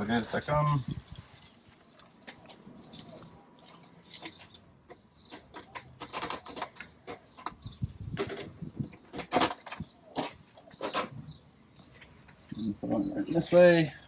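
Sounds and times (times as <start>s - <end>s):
hardware clicking and jingling: 0.0s - 11.1s.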